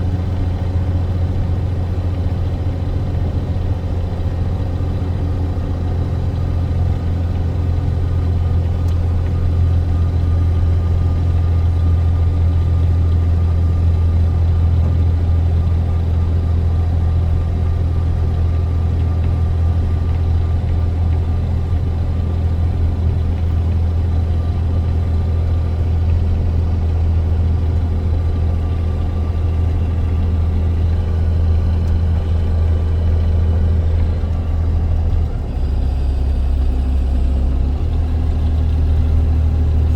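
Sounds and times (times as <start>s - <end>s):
truck engine droning: 0.0s - 39.9s
road noise: 19.8s - 39.9s.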